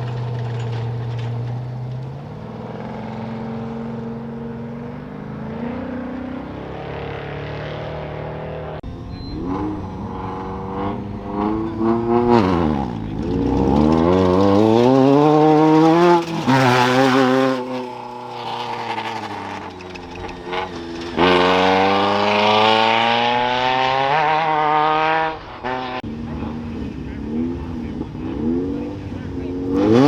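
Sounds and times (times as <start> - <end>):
engine starting and pulling away: 0.0 - 30.0
race vehicles accelerating: 0.0 - 30.0.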